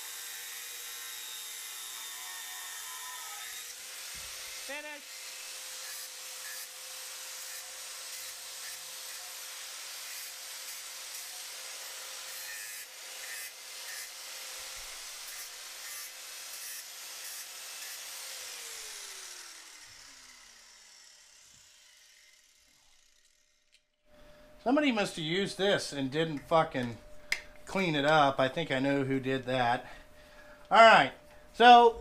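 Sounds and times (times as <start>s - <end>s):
power tool grinding metal: 0.0s - 23.8s
motor winding down: 18.6s - 23.7s.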